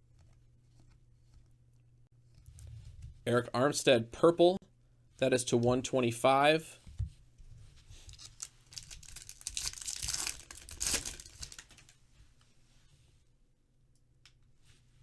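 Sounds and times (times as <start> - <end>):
foil wrapper crinkling and tearing: 8.0 - 12.0.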